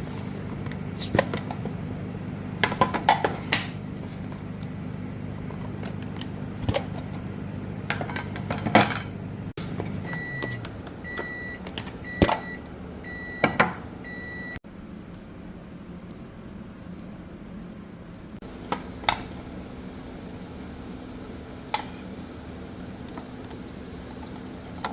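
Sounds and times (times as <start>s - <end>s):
microwave oven humming: 0.0s - 24.9s
microwave short high beeps: 10.1s - 14.6s.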